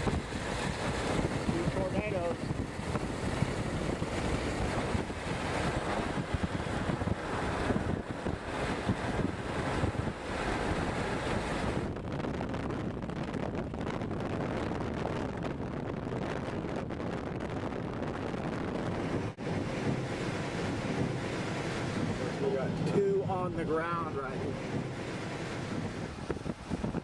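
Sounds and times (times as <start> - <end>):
strong wind buffeting microphone: 0.0 - 27.0.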